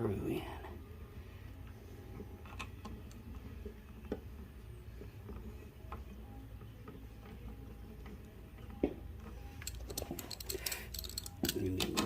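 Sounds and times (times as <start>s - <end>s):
low steady hum: 0.0s - 12.0s
small metal parts clicking: 9.6s - 12.0s.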